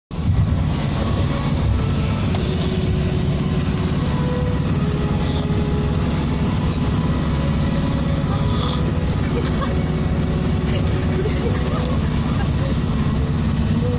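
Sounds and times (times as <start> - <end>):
engine low rumble: 0.1 - 13.9.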